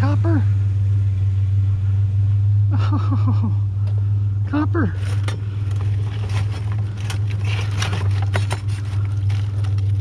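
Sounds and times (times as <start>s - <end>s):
truck engine idling: 0.0s - 10.0s
scrap metal clinking and scraping: 5.0s - 10.0s.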